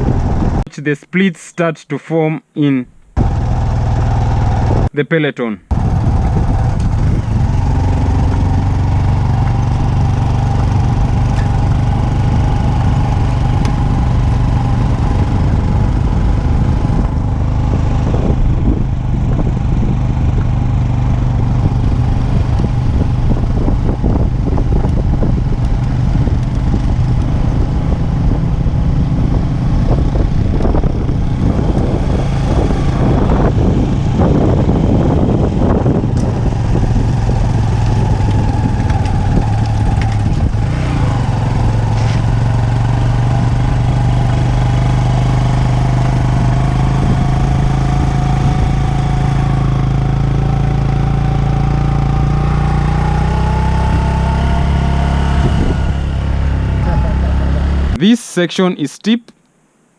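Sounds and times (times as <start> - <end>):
vehicle engine running steadily: 0.0 - 0.6, 3.2 - 4.9, 5.7 - 58.0
rough rushing noise: 5.7 - 49.9.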